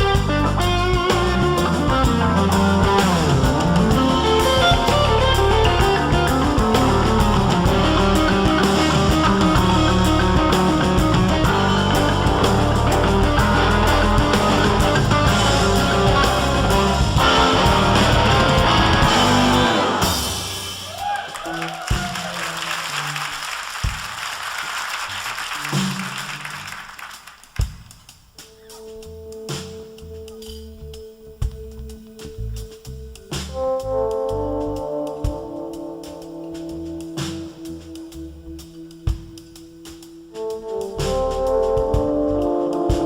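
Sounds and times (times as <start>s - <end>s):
guitar rock music: 0.0s - 20.9s.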